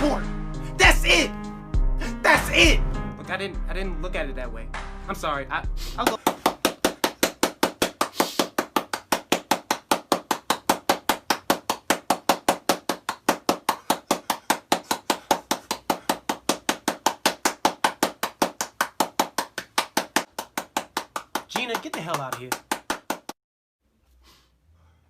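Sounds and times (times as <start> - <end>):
rapid sharp knocks: 6.1 - 23.4.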